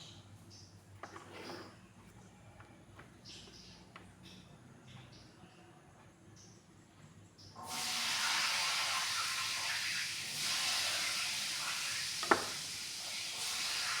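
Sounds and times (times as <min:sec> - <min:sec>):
steady hissing noise: 0:07.7 - 0:14.0.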